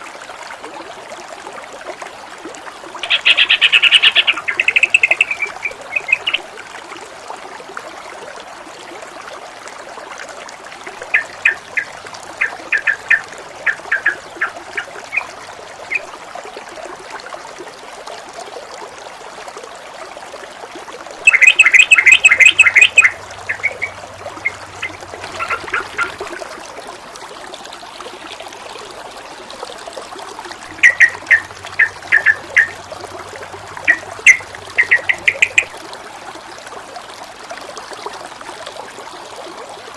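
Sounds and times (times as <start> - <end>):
water running and trickling: 0.0 - 39.9
bird harsh repeated notes: 3.0 - 6.4, 21.3 - 26.2, 30.7 - 32.8, 33.8 - 35.7.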